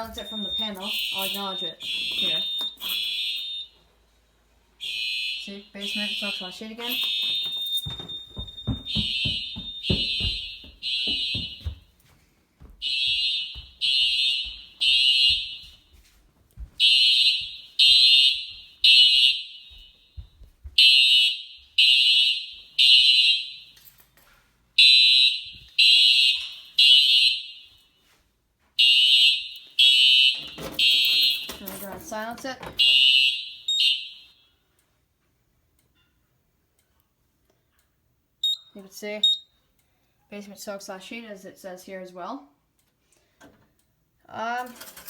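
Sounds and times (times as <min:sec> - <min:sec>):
fire alarm horn beeps: 0:00.0 - 0:03.8, 0:04.8 - 0:11.9, 0:12.8 - 0:16.0, 0:16.8 - 0:23.8, 0:24.8 - 0:28.2, 0:28.8 - 0:31.8, 0:32.8 - 0:34.7, 0:38.4 - 0:39.7.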